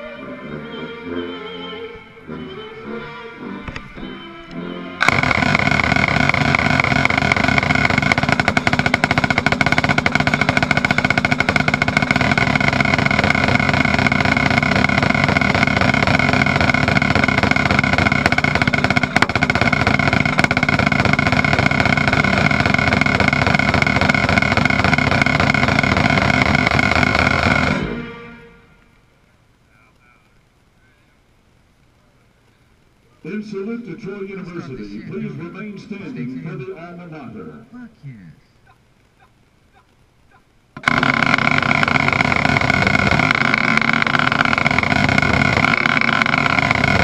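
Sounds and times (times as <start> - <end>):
sustained band chord: 0.0 - 9.0, 27.4 - 29.0
snare drum roll: 5.0 - 28.4, 40.8 - 47.0.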